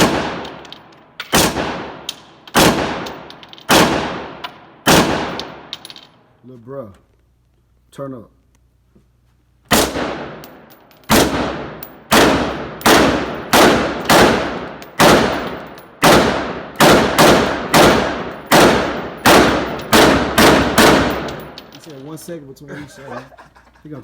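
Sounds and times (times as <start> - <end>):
rapid gunshots: 0.0 - 0.5, 2.6 - 3.1, 11.1 - 21.4.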